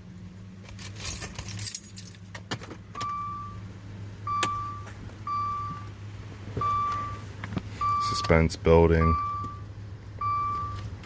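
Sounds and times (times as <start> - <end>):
low steady hum: 0.0 - 11.0
car keys jangling: 0.6 - 2.7
dashboard warning chime: 3.0 - 6.0, 6.6 - 11.0.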